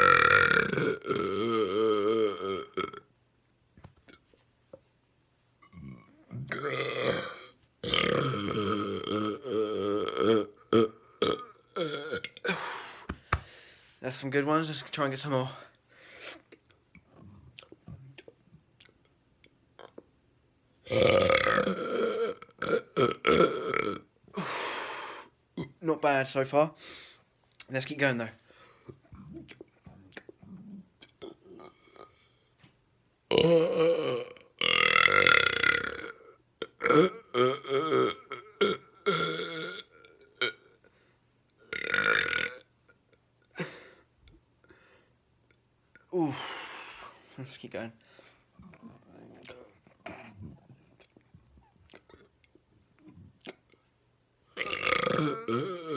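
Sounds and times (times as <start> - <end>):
person burping: 0.0 - 3.1, 5.6 - 12.8, 20.9 - 24.5, 25.6 - 25.8, 30.4 - 32.1, 33.3 - 40.8, 41.6 - 42.7, 49.4 - 51.1, 54.6 - 55.9.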